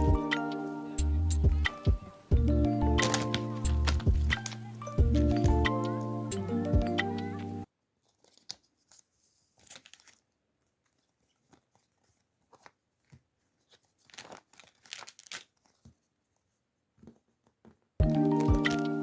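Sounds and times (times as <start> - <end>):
plastic packaging crinkling: 3.0 - 6.2, 8.0 - 19.0.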